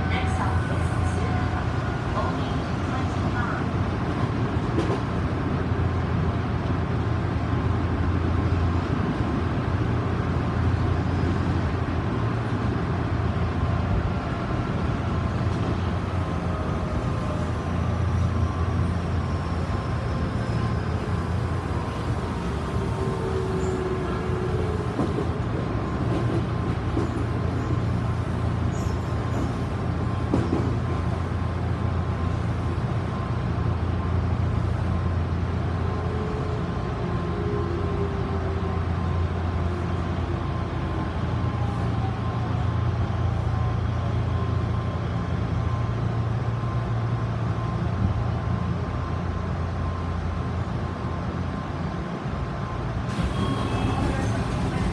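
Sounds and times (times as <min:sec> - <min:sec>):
electric train rumble: 0:00.0 - 0:54.9.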